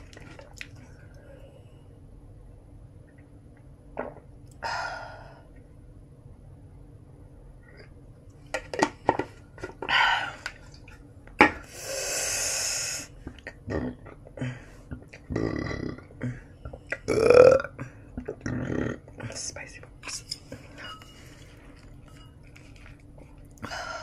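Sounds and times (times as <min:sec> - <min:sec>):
person burping: 0:13.4 - 0:19.2.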